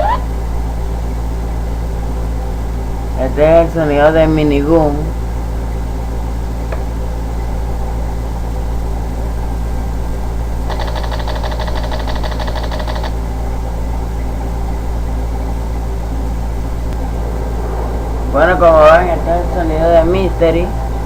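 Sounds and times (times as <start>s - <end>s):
steady low hum: 0.0s - 21.0s
minigun automatic fire: 10.7s - 13.2s.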